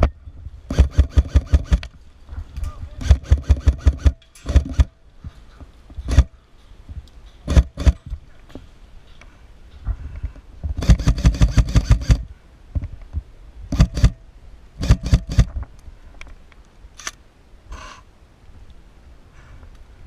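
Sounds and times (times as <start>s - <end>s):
airsoft rifle firing: 0.7s - 1.9s, 3.0s - 4.9s, 10.8s - 12.3s, 13.7s - 14.2s, 14.8s - 15.5s.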